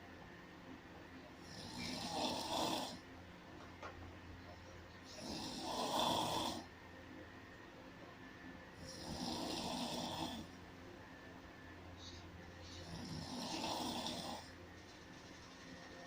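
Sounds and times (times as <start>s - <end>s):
person snoring: 1.4s - 3.0s, 5.1s - 6.7s, 8.8s - 10.5s, 12.8s - 14.5s.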